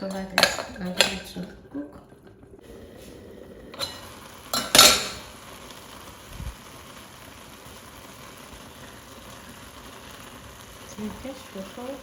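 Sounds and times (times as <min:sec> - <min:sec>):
metal pot lid clinking: 0:00.0 - 0:01.4, 0:03.7 - 0:05.3
faint steady hiss: 0:00.0 - 0:12.0.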